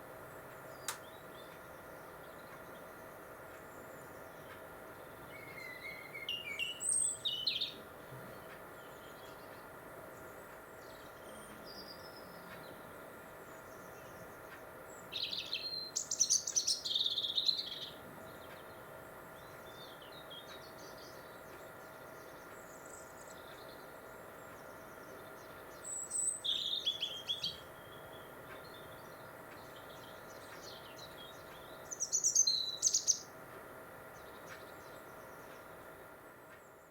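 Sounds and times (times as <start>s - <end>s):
faint bird chirps: 0.4s - 33.3s
robin singing warbling phrases: 5.3s - 7.8s, 15.0s - 18.0s, 25.8s - 33.3s.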